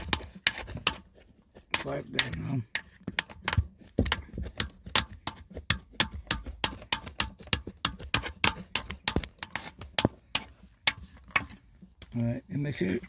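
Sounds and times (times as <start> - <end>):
quick irregular taps and knocks: 0.0 - 12.3.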